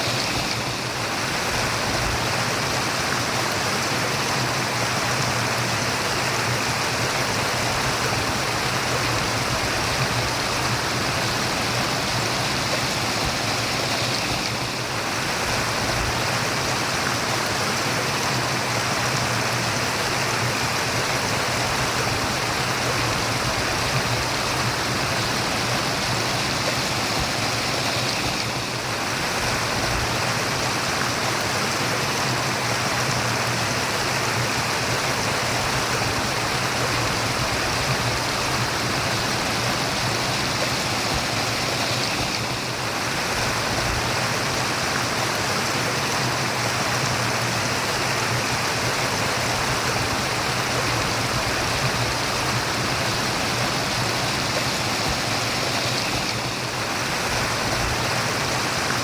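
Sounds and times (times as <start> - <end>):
stream of running water: 0.0 - 59.0.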